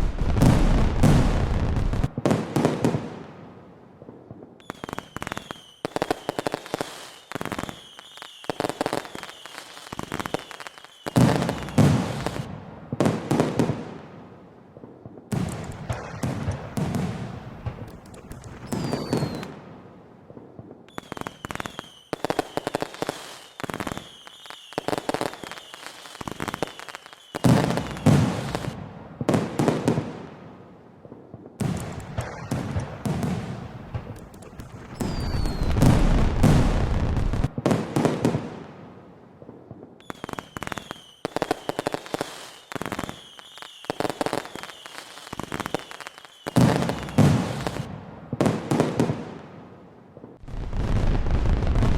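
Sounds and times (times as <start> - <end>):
deep rumbling firework boom: 0.0 - 2.1, 50.4 - 51.9
fireworks crackling bangs: 0.0 - 3.5, 4.3 - 14.3, 15.0 - 49.7, 50.3 - 51.9
thin high firework whistle: 4.6 - 12.4, 18.5 - 19.5, 20.9 - 28.7, 34.4 - 36.7, 40.0 - 47.8.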